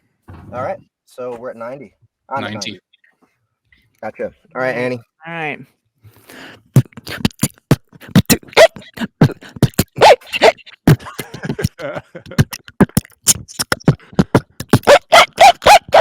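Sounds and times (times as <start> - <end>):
beatboxing with hiccup sounds: 6.7 - 16.0.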